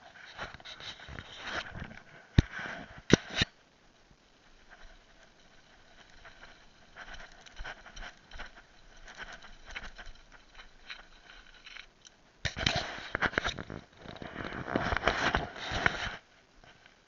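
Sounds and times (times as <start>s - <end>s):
bike rattling: 4.6s - 12.6s.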